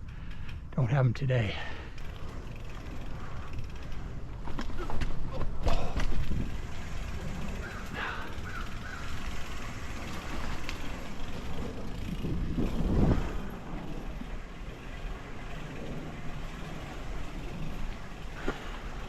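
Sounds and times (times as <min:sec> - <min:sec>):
bike tyres rumbling on mud: 0:00.2 - 0:19.0
wind on microphone: 0:11.8 - 0:14.3.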